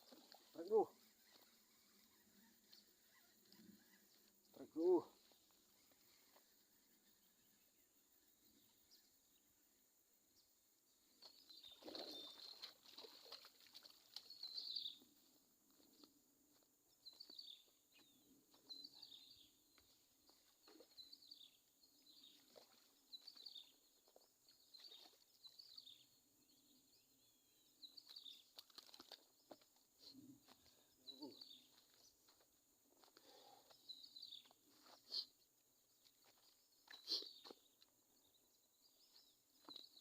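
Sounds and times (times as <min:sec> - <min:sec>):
bird chirping: 0:00.0 - 0:09.7, 0:10.3 - 0:16.1, 0:16.9 - 0:32.4, 0:33.2 - 0:40.0.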